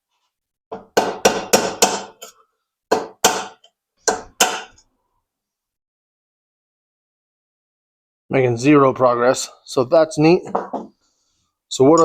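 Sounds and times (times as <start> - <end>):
hammer striking a nail on metal: 0.7 - 2.3, 2.9 - 4.8.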